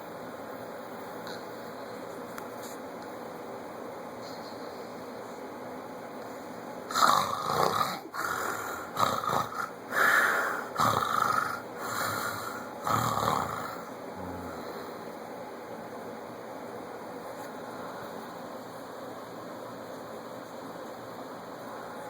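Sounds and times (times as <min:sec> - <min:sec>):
loud short snores: 0:06.9 - 0:14.6.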